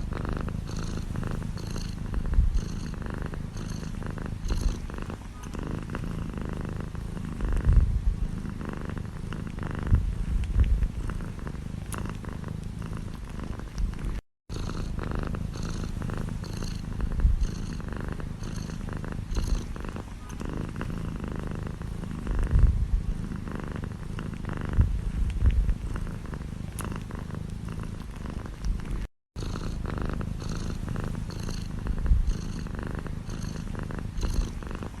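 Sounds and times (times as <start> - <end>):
cat purring: 0.0 - 35.0.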